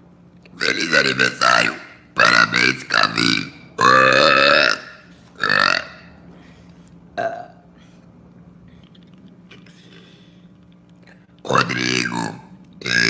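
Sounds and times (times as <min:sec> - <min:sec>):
woman burping: 0:07.2 - 0:07.7.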